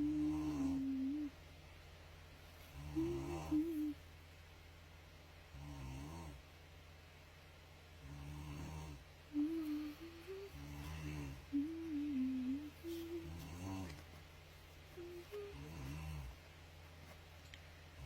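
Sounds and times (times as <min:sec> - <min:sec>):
person snoring: 0:00.0 - 0:01.3, 0:02.8 - 0:03.9, 0:08.0 - 0:14.0, 0:15.0 - 0:16.4.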